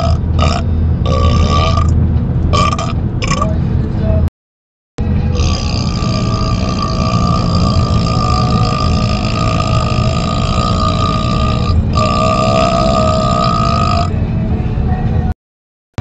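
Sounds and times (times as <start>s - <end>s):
man burping: 0.0s - 3.5s, 5.4s - 14.1s
car road rumble: 0.0s - 4.3s, 5.0s - 15.3s.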